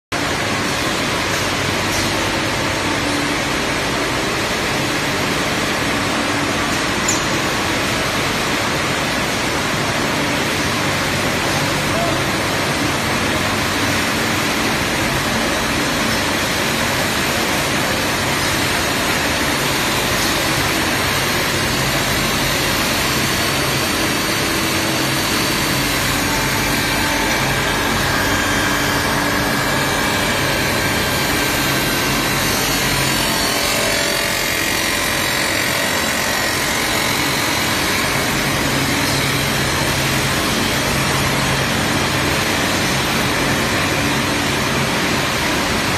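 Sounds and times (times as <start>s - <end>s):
tube mill machine noise: 0.1s - 45.9s
faint high machine whine: 0.2s - 45.9s.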